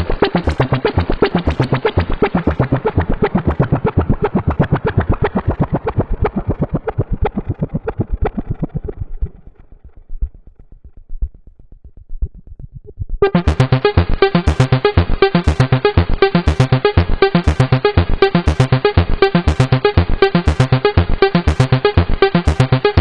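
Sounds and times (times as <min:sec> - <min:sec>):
synthesizer fast sequenced notes: 0:00.0 - 0:23.0.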